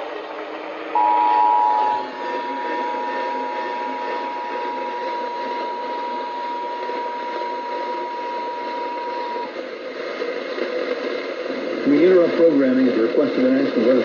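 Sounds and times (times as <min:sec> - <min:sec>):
radio hiss: 0:00.9 - 0:14.0
steady two-note alert tone: 0:01.0 - 0:09.4.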